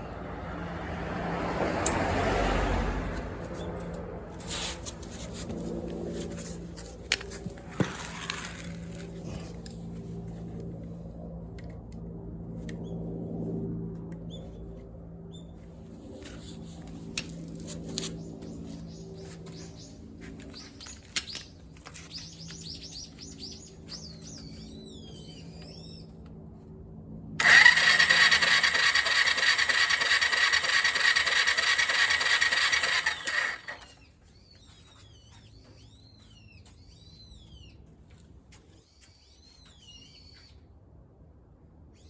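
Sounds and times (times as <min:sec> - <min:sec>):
electric starter cranking engine: 0:27.4 - 0:34.0.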